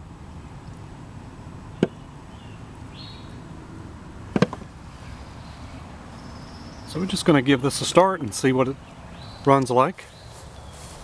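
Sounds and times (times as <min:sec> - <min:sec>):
outdoor background noise: 0:00.0 - 0:11.0
sharp knocks: 0:04.3 - 0:04.7.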